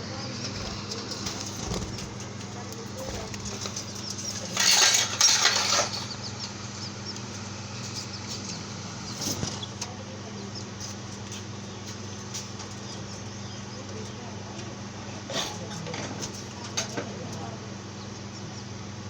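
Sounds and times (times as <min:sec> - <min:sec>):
small birds chirping: 0:00.0 - 0:04.6, 0:05.8 - 0:14.5
loud rustling: 0:00.3 - 0:05.9.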